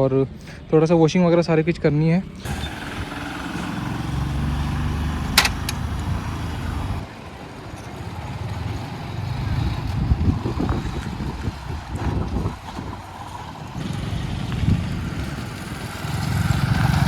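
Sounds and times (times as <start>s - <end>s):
traffic rumble: 2.2s - 17.0s
vehicle engine running: 2.3s - 17.0s
sharp click: 5.3s - 6.2s.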